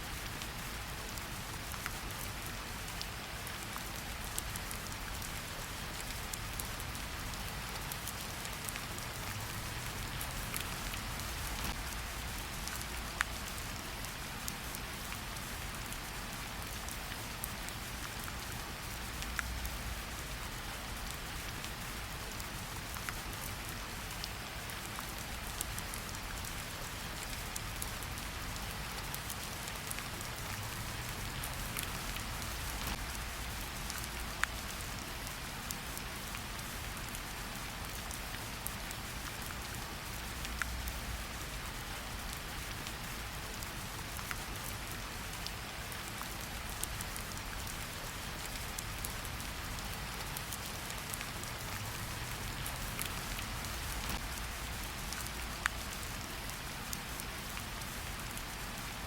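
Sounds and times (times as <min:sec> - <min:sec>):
raindrops ticking: 0:27.1 - 0:35.3, 0:50.0 - 0:56.4.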